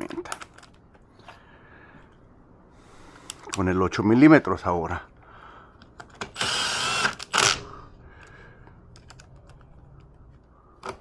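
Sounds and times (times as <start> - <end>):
power drill running: 6.3 - 7.6.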